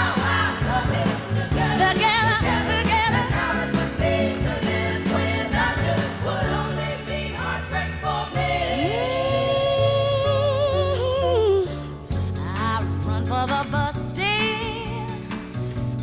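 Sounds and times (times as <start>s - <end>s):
steady bass line: 0.0s - 16.0s
person singing: 8.7s - 11.9s.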